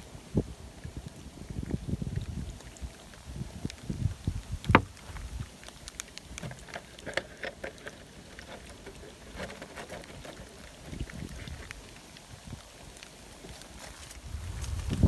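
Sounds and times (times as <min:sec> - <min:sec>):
wind gusting on microphone: 0:00.0 - 0:05.5, 0:14.0 - 0:15.0.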